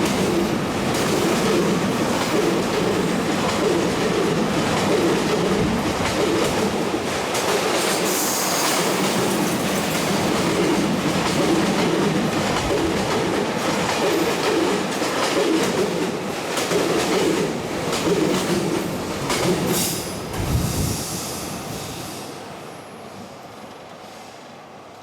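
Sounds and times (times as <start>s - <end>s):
train wheels clacking over rail joints: 0.0s - 20.6s
train wheels screeching: 7.9s - 10.2s.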